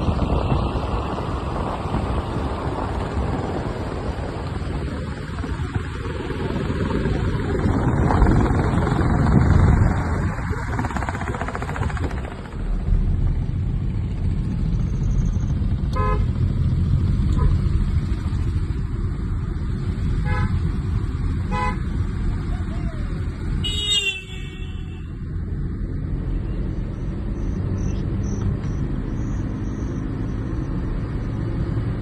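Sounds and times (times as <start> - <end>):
road vehicle low rumble: 0.0 - 32.0
wind noise on microphone: 0.0 - 32.0
horn toots: 15.9 - 16.3, 21.5 - 21.8, 23.6 - 25.2.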